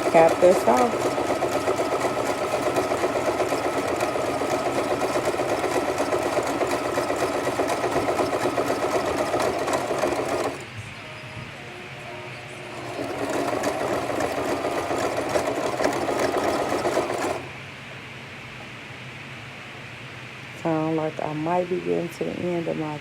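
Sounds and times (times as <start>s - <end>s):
sewing machine stitching: 0.0s - 10.6s, 12.6s - 17.5s.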